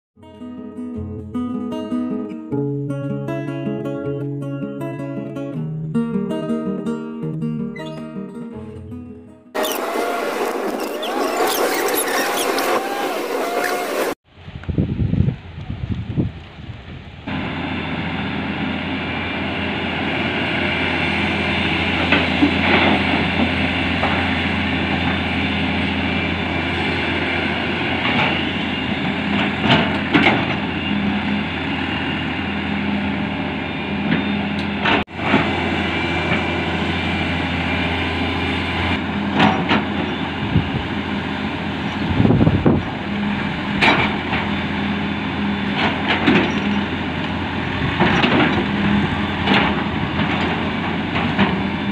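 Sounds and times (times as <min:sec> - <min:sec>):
excavator diesel engine running: 0:09.6 - 0:14.2, 0:17.2 - 0:51.9.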